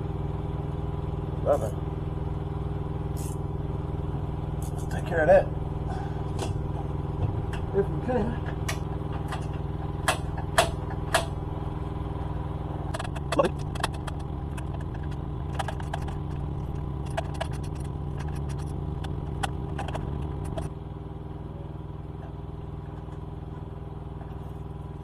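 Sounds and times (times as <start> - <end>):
steady low hum: 0.0 - 25.0
hand tools clicking on metal: 8.4 - 11.4.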